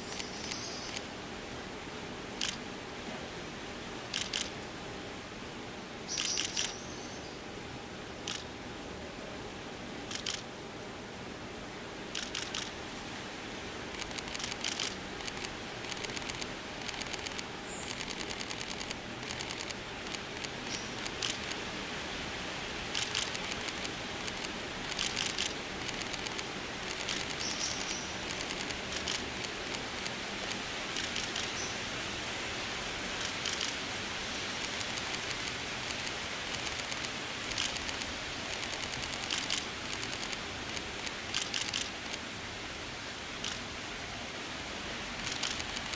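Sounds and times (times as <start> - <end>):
camera shutter clicks: 0.0 - 1.0, 2.4 - 2.6, 4.1 - 4.6, 6.2 - 6.8, 8.3 - 8.5, 10.1 - 10.5, 12.2 - 12.8, 14.0 - 21.6, 23.0 - 31.6, 33.2 - 33.8, 34.6 - 42.2, 43.4 - 43.6, 45.2 - 45.9.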